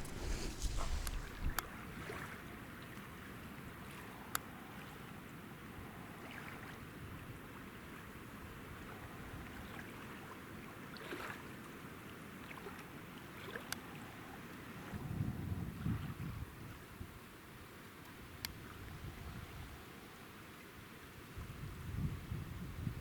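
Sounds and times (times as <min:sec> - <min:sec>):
faint clicks: 0:00.0 - 0:01.7
river flowing: 0:00.0 - 0:02.3.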